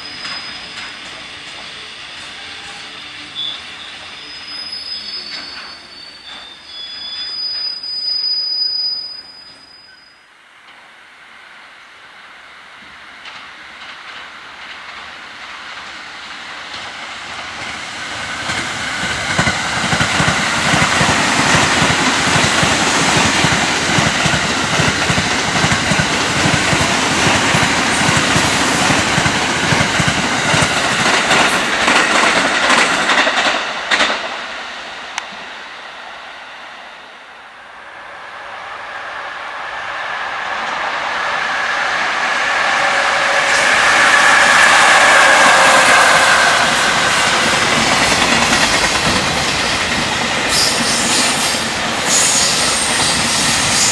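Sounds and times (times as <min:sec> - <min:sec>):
high steady squeal: 0:00.0 - 0:10.4
express train passing at speed: 0:00.0 - 0:53.9
freight train passing: 0:00.0 - 0:53.9.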